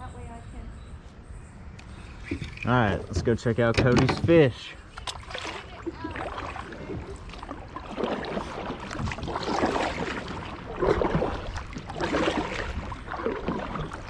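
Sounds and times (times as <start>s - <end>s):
kayak paddle splashing in water: 4.9s - 14.0s.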